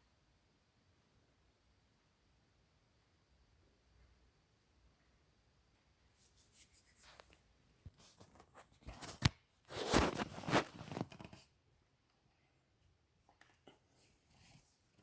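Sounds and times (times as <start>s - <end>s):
rustling and scraping: 6.2s - 11.5s.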